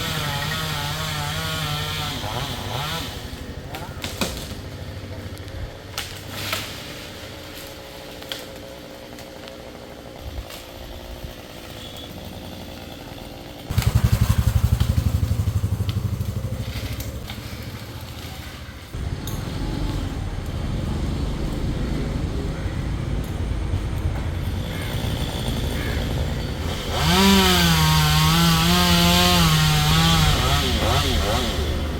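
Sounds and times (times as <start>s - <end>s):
chainsaw running: 0.0s - 3.8s, 7.2s - 22.2s, 24.6s - 31.9s.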